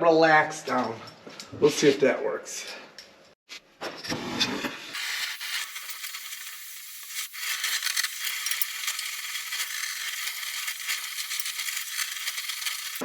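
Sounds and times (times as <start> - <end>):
gas torch hissing: 4.9 - 13.0.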